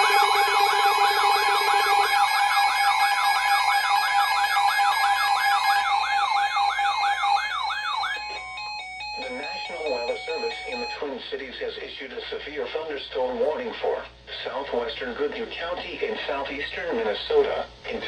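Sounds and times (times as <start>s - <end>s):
electronic warbling siren: 0.0s - 11.0s
low fast warble: 0.0s - 11.0s.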